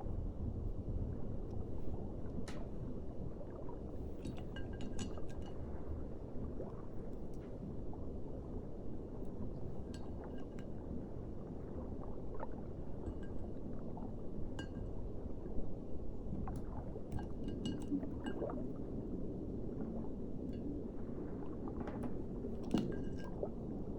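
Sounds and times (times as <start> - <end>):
light ringing clinks: 4.2 - 5.6.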